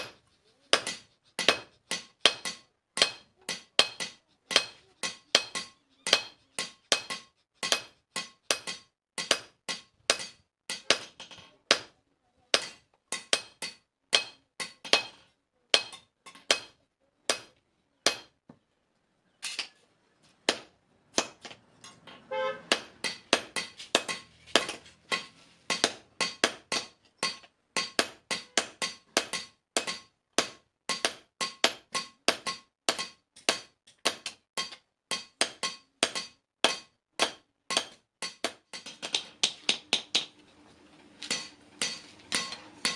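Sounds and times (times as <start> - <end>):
hammer striking metal on anvil: 0.0 - 11.9, 12.5 - 17.5, 18.1 - 18.4, 20.5 - 40.5, 41.2 - 42.9.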